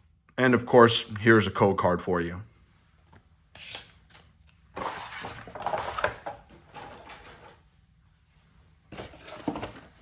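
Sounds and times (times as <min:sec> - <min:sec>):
cardboard box rustling and scraping: 0:04.8 - 0:07.5, 0:08.9 - 0:10.0.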